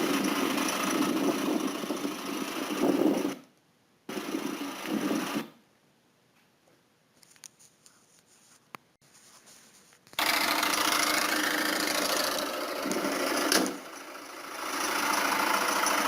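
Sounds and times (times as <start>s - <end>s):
diesel engine ticking clatter: 0.0s - 3.4s, 10.2s - 16.0s.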